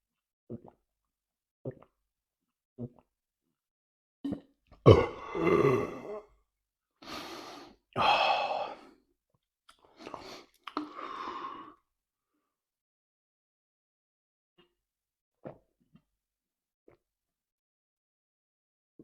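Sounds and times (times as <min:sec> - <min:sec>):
man making breathy throat sounds: 0:04.9 - 0:06.3.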